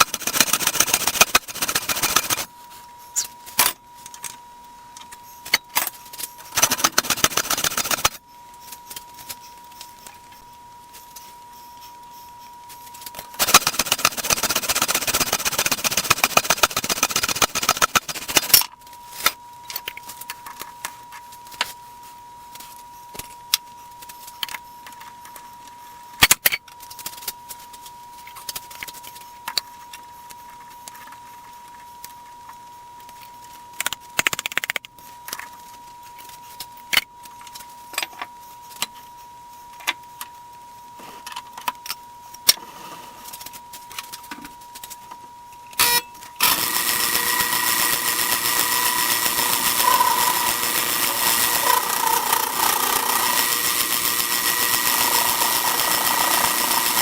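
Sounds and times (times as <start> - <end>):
power machine whining: 0.0 - 2.5, 13.4 - 18.6, 45.8 - 57.0.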